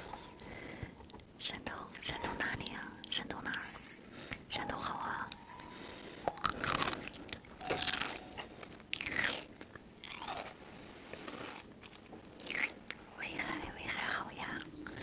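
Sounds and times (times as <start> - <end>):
person chewing crunchy food: 5.4 - 13.1, 14.4 - 15.0.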